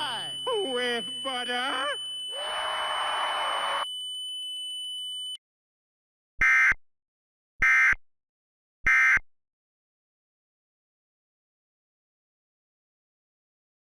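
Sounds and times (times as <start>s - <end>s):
buzzy data tone bursts: 0.0s - 3.9s
steady high tone: 0.0s - 5.2s.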